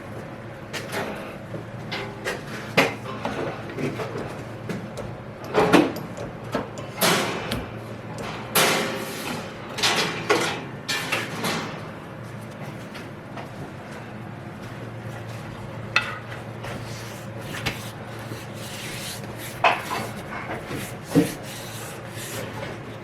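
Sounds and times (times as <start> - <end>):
workshop parts knocking and clunking: 0.7 - 11.9, 15.8 - 23.0.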